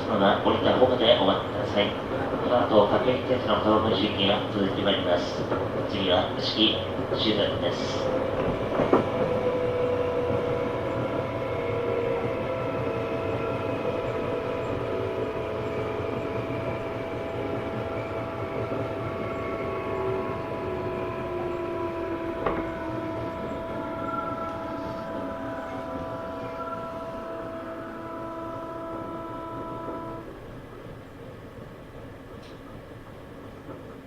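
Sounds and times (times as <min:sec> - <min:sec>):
rail rumble: 0:00.0 - 0:34.0
electric train motor whine: 0:07.4 - 0:31.0
knock: 0:22.4 - 0:22.7.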